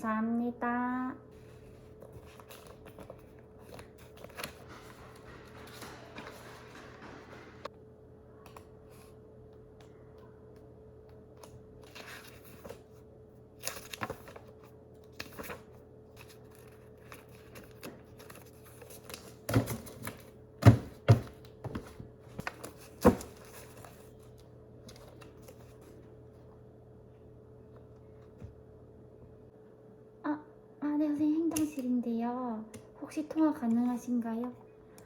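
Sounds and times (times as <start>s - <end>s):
faint steady hum: 0.0s - 35.0s
papers rustling: 1.4s - 7.7s, 13.6s - 26.1s.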